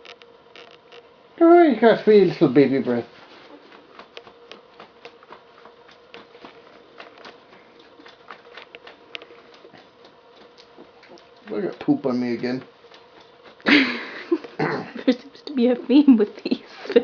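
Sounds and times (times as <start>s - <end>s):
small clicks and rustling: 0.0s - 1.1s
faint steady hum: 0.0s - 17.0s.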